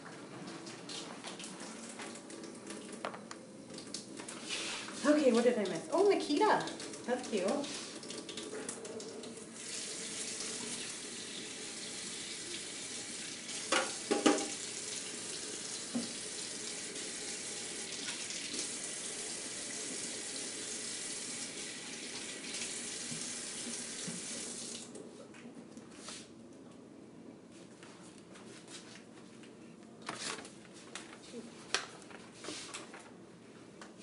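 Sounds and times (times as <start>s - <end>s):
tap water running into sink: 5.1s - 25.0s.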